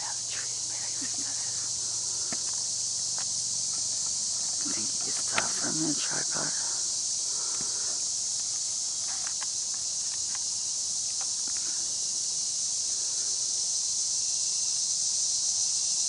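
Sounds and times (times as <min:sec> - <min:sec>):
insects chorus: 0:00.0 - 0:16.0
faint ticks: 0:02.3 - 0:05.6, 0:08.4 - 0:10.5, 0:11.1 - 0:11.8.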